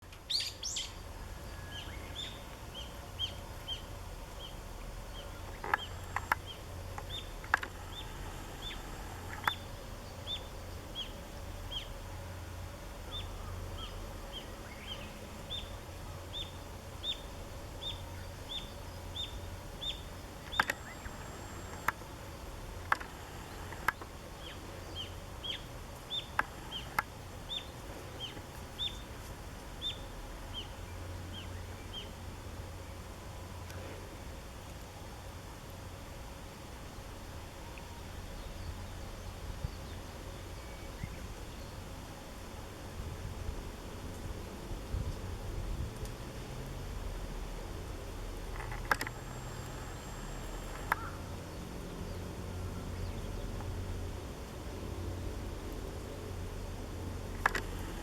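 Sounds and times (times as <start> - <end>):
small bird chirping: 0.3 - 11.9, 16.3 - 22.0, 23.0 - 29.1
sharp clicks: 5.5 - 8.0, 20.4 - 22.0, 22.8 - 24.1, 48.5 - 51.1.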